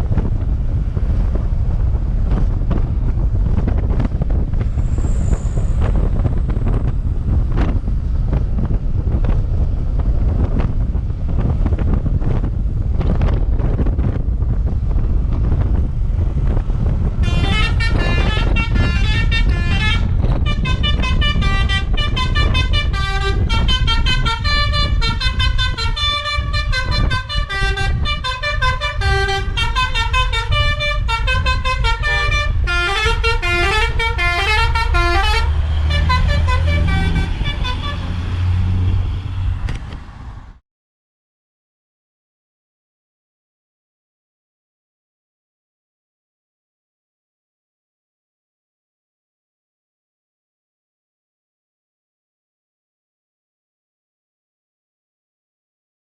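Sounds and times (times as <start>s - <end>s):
low rumble: 0.0s - 40.6s
bus horn playing melody: 17.2s - 38.4s.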